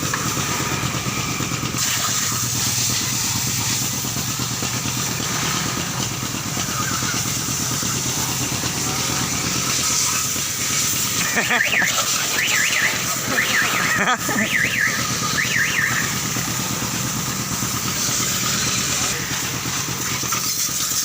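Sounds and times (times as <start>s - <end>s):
motor running with pulsing beat: 0.0s - 21.0s
warbling siren tone: 11.2s - 16.9s.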